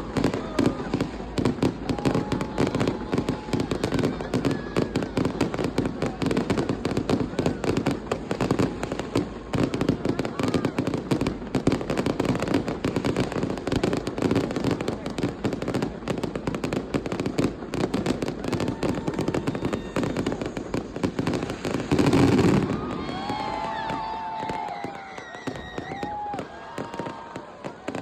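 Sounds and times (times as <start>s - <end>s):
firecrackers crackling: 0.0s - 28.0s
fireworks burst: 0.0s - 28.0s
falling firework whistles: 18.3s - 28.0s.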